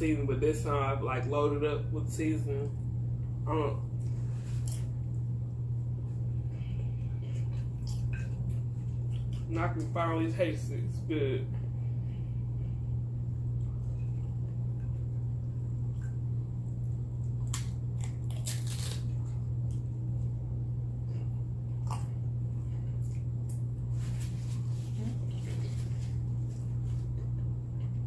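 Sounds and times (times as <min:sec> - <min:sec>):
steady low hum: 0:00.0 - 0:28.0
crunching and chewing chips: 0:06.0 - 0:09.9, 0:13.6 - 0:20.4, 0:21.2 - 0:28.0.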